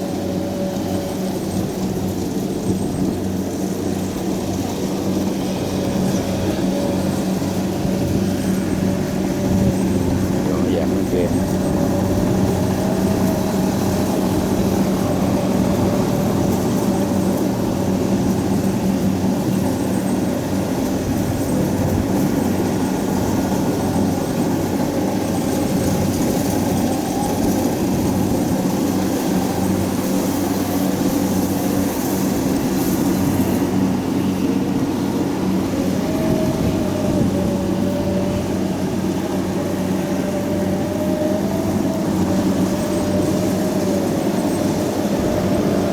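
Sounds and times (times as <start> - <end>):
diesel engine humming: 0.0 - 45.9.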